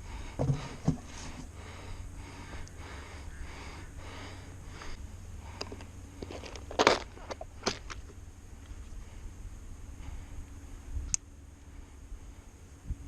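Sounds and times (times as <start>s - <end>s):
soft breathing: 0.0s - 6.5s, 8.8s - 10.9s.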